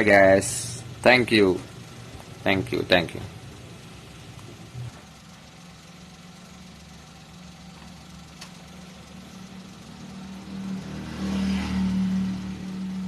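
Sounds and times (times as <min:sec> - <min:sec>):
car engine idling: 0:00.0 - 0:13.0.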